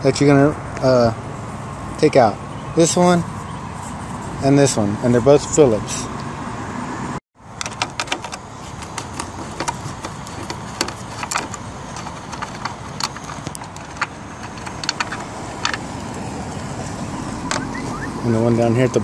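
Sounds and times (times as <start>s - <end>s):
steady background noise: 0.0s - 19.0s
screwdriver metallic clicks and scrapes: 7.6s - 15.9s.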